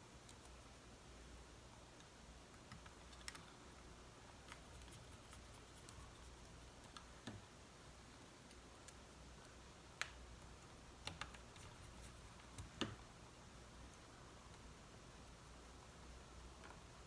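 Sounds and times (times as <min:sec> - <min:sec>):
faint clicks and taps: 0:02.0 - 0:03.6, 0:04.4 - 0:07.5, 0:08.4 - 0:13.0.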